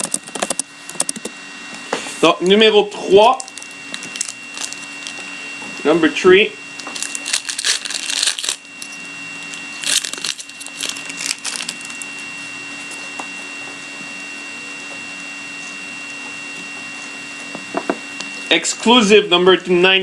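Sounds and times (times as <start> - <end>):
electrical hum with high whine: 0.0 - 20.0
wrapper tearing and crinkling: 3.3 - 5.2, 6.8 - 12.1.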